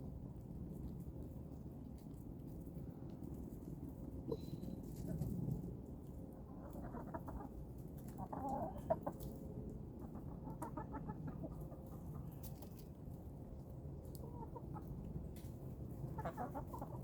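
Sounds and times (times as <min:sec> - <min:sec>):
low background hum: 0:00.0 - 0:17.0
chickens clucking: 0:05.9 - 0:17.0.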